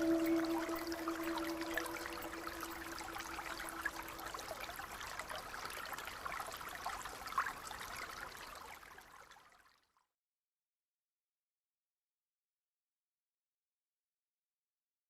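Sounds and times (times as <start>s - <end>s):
brook babbling: 0.0s - 9.6s.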